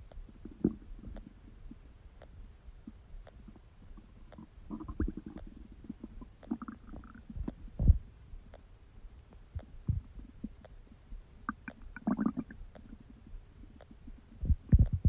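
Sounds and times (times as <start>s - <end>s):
small pops and clicks: 0.0s - 7.8s, 11.5s - 15.0s
stomach gurgling: 0.3s - 1.9s, 2.8s - 8.1s, 9.6s - 10.7s, 11.4s - 15.0s.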